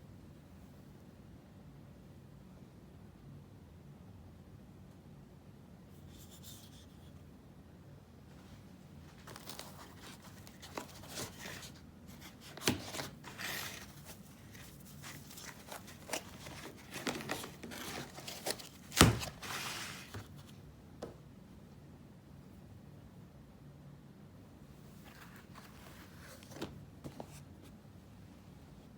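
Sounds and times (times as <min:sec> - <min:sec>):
packaging crinkling and tearing: 0:09.2 - 0:20.2.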